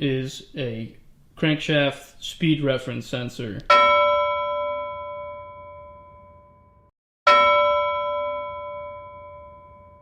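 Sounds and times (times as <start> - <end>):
metallic bell dings: 3.7 - 10.0.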